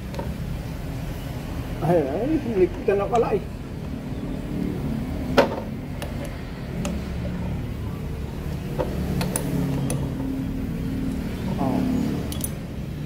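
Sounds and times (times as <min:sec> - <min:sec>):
sharp metallic clicks: 0:08.8 - 0:10.3.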